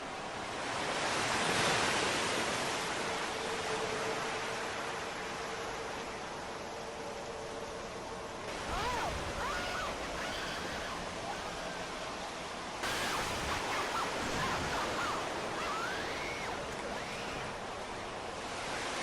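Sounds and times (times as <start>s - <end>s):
steady rushing noise: 2.7s - 19.0s
short high gliding calls: 8.5s - 18.1s.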